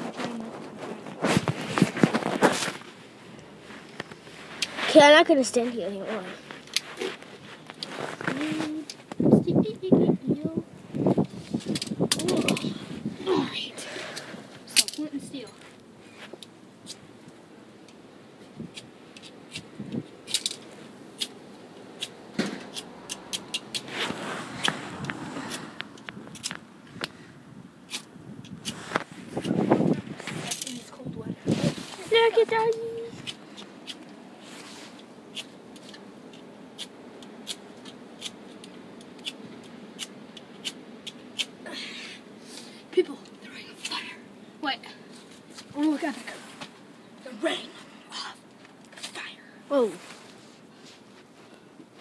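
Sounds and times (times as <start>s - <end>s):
flint and steel scraping clicks: 11.2s - 12.7s, 18.7s - 21.4s, 22.7s - 23.9s, 24.6s - 27.2s, 27.9s - 29.6s, 34.9s - 41.5s.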